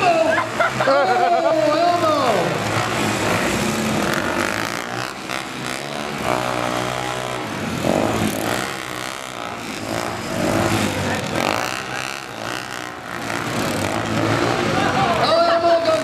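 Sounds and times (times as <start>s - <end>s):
motorcycle engines revving: 0.0s - 16.0s.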